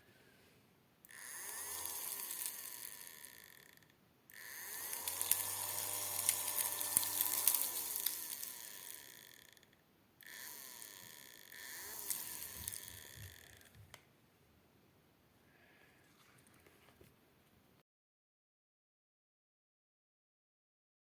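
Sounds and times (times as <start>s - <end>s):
small vacuum motor running: 1.1s - 13.9s.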